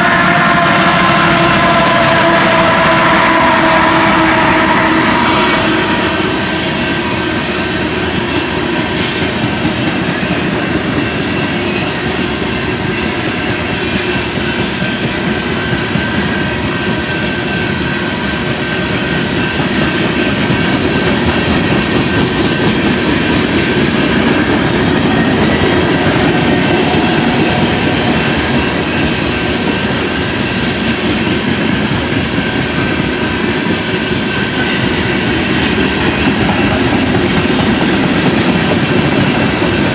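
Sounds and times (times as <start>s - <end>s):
high wheel squeal: 0.0s - 39.9s
train wheels rumbling on rails: 0.0s - 39.9s
wheels clacking over rail joints: 18.5s - 39.9s.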